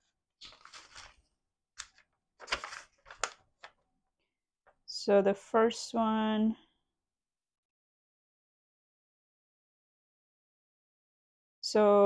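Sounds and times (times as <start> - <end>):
packaging rustling: 0.4 - 3.7.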